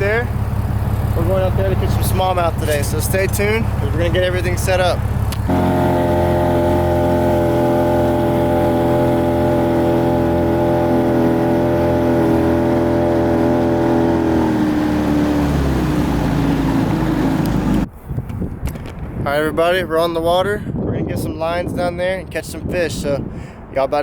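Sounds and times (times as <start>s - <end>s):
engine running: 0.0s - 17.9s.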